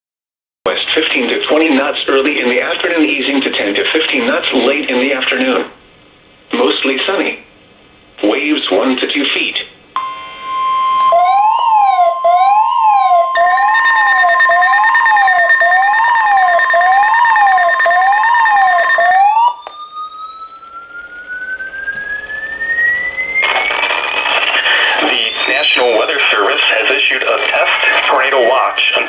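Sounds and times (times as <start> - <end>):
noisy static burst: 0.7 - 5.8, 23.3 - 29.0
rising electronic whistle: 10.0 - 29.0
second steady alert tone: 10.0 - 29.0
steady warning alarm tone: 10.0 - 29.0
warbling electronic siren: 10.0 - 29.0.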